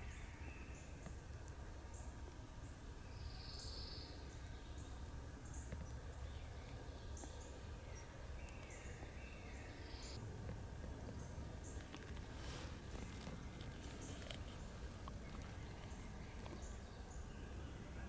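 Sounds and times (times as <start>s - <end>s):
small birds chirping: 11.0s - 18.0s.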